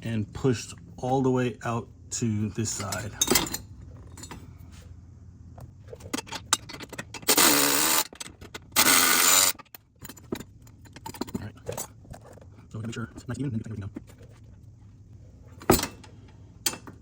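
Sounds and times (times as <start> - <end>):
metal hardware clinking: 2.6 - 4.5, 6.0 - 12.3, 15.6 - 17.0
power tool driving bolts: 6.2 - 10.3.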